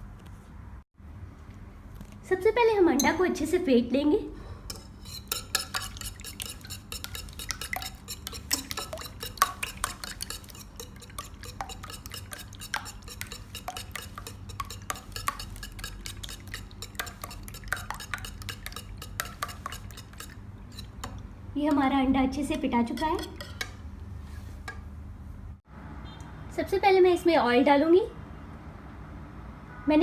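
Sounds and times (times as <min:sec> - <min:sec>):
utensil tapping against bowl: 0:04.7 - 0:21.2.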